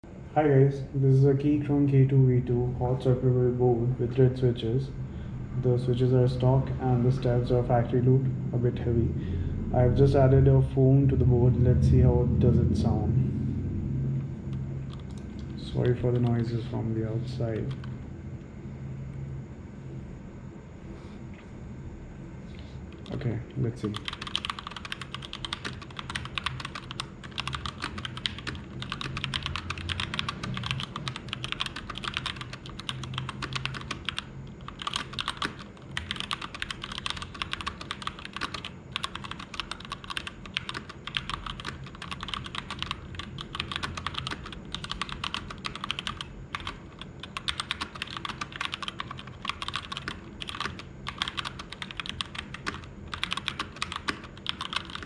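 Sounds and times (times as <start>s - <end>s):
fast typing on mechanical keyboard: 17.5s - 18.0s, 23.8s - 55.0s.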